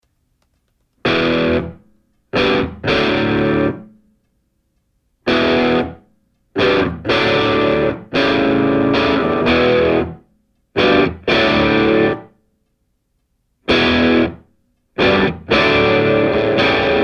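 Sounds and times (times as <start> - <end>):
distorted electric guitar chords: 1.0 - 1.8, 2.4 - 4.0, 5.3 - 6.0, 6.6 - 10.2, 10.8 - 12.3, 13.7 - 14.4, 15.0 - 17.0.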